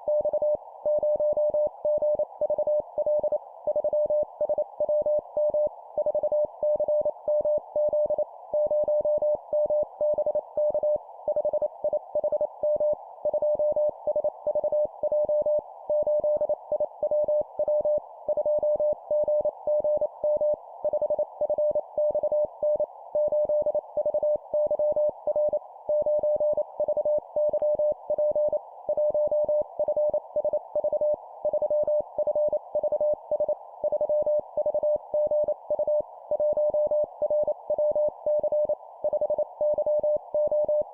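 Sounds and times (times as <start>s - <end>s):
morse code beeps: 14.5s - 40.8s.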